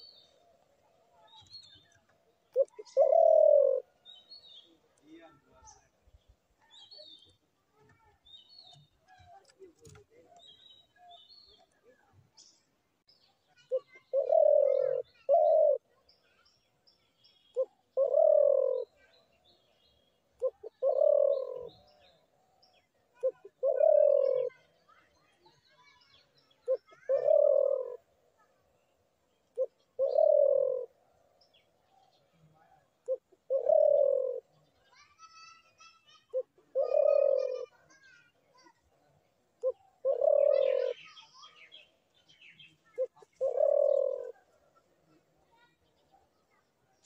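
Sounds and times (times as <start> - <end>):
small birds chirping: 0.0 - 47.0
dove cooing: 2.4 - 4.0, 13.7 - 16.0, 17.5 - 19.0, 20.4 - 22.1, 23.2 - 24.7, 26.6 - 28.1, 29.6 - 31.0, 32.6 - 34.5, 36.3 - 37.8, 39.6 - 41.1, 42.9 - 45.0.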